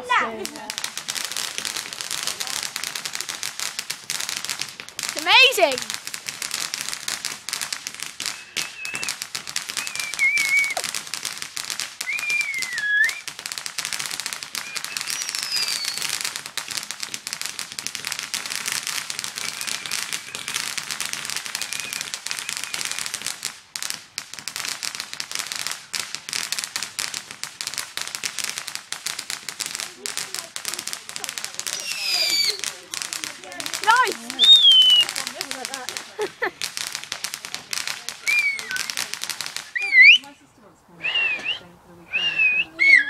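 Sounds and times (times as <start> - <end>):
firework crackling: 0.0 - 43.0
firework whistles: 7.6 - 11.0, 11.8 - 13.4, 14.0 - 16.3, 17.9 - 23.4, 31.2 - 32.8, 33.8 - 35.8, 38.0 - 40.3, 41.0 - 43.0.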